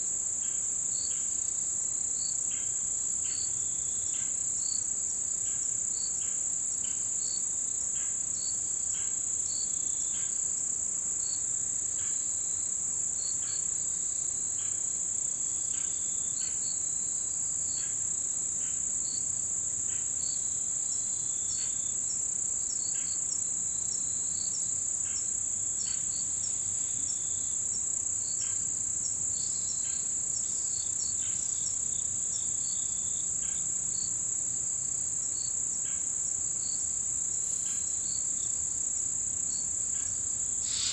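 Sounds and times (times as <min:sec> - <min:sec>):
insects trilling in chorus: 0:34.8 - 0:40.9
short chirps: 0:40.6 - 0:40.9.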